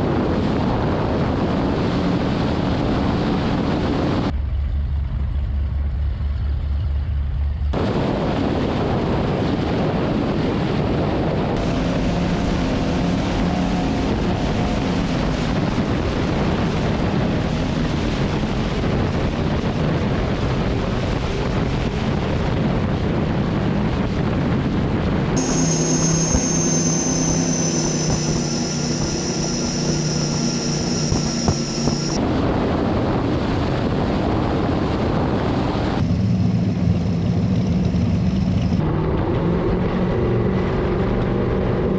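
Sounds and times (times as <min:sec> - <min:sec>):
powerboat engine drone: 0:00.0 - 0:41.9
loud rushing water: 0:07.8 - 0:36.0.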